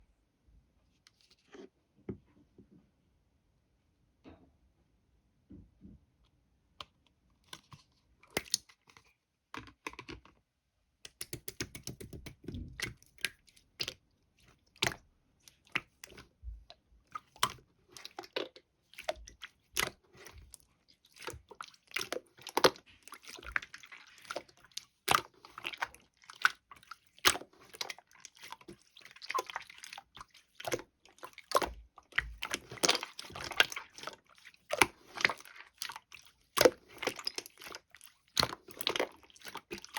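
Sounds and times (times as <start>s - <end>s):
close-up clicks and taps: 11.0s - 12.5s.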